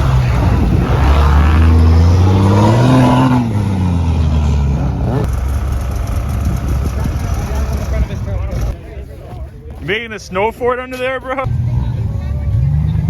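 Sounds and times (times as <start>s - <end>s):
off-road vehicle engine revving: 0.0s - 8.8s, 11.4s - 13.0s.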